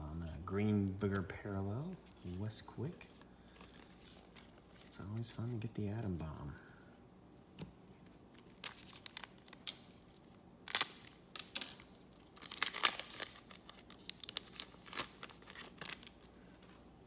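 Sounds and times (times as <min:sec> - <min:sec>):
foil wrapper crinkling: 0:08.4 - 0:16.6.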